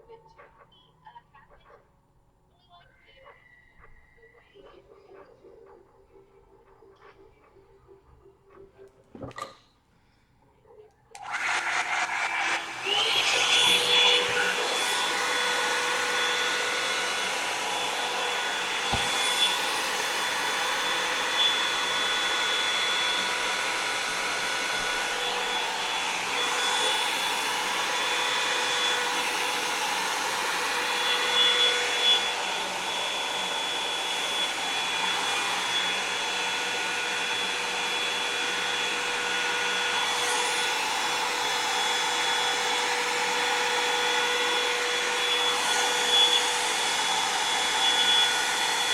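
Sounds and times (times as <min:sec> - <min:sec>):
hot-air brush running: 0:11.2 - 0:48.9.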